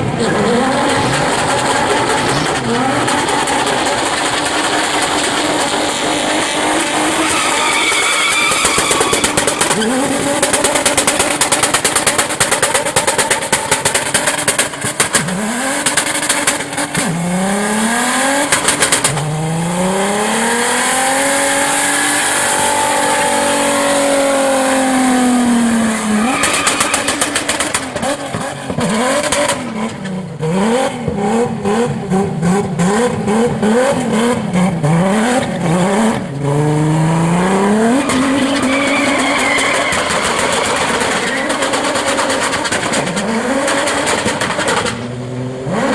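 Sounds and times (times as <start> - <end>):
car engine revving hard: 0.0 - 7.8, 9.1 - 45.9
tyres screeching: 5.5 - 11.6, 21.9 - 28.6, 37.8 - 42.6.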